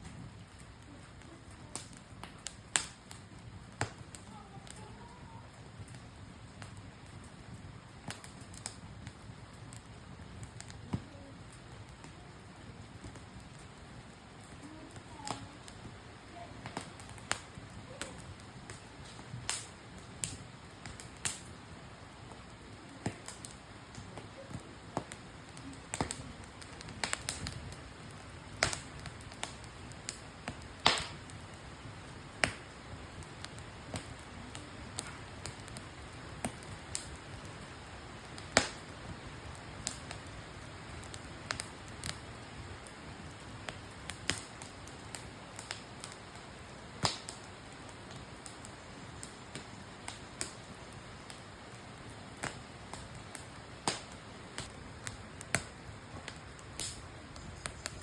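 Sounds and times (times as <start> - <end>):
campfire crackling: 0.0 - 58.0.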